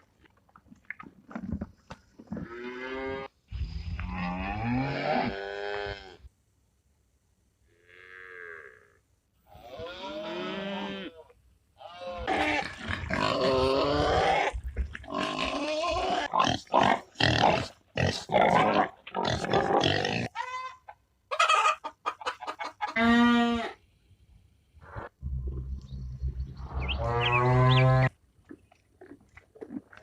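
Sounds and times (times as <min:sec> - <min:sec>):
farm animals calling: 0:15.1 - 0:23.8, 0:24.9 - 0:28.2.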